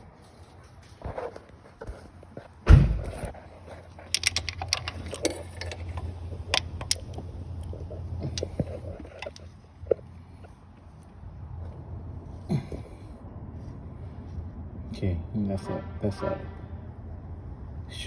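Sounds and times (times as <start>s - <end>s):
steady low hum: 1.5s - 18.0s
metallic clicks and taps: 4.1s - 7.3s, 8.2s - 9.5s.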